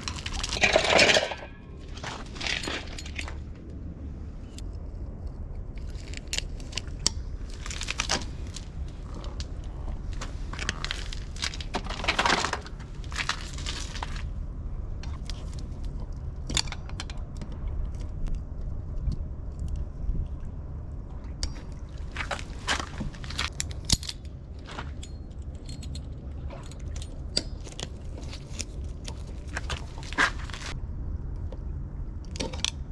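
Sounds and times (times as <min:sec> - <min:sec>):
steady low rumble: 0:00.0 - 0:32.9
metal tools clinking and scraping: 0:00.5 - 0:03.6.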